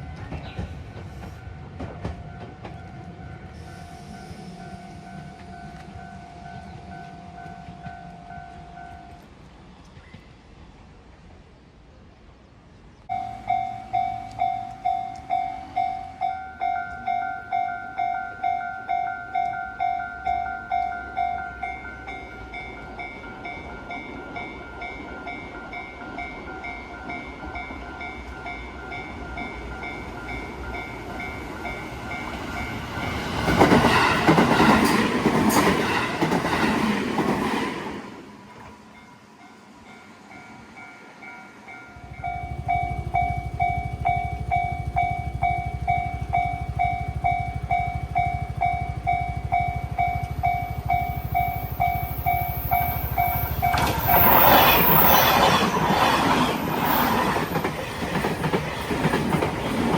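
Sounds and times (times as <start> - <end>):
train passing over crossing: 0.0 - 9.8, 13.0 - 59.9
level-crossing warning bell: 1.4 - 9.3, 13.1 - 33.5, 38.9 - 56.0.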